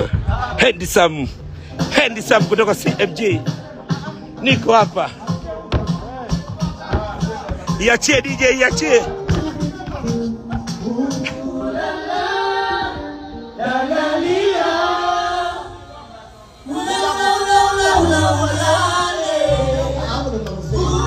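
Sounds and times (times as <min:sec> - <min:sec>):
song with sung vocals: 0:01.5 - 0:21.0
deep bass: 0:17.8 - 0:21.0.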